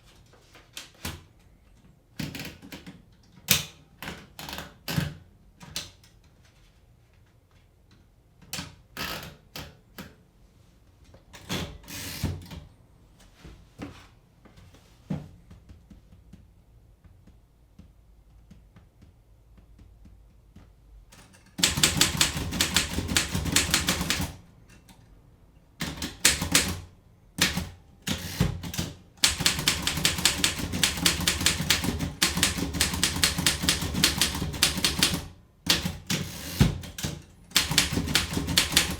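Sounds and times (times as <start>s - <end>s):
typewriter typing: 21.2s - 24.4s, 25.8s - 38.9s.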